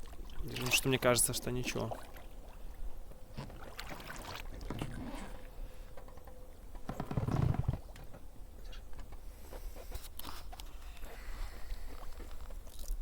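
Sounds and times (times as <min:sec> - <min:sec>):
oars dipping and splashing: 0:00.0 - 0:13.0.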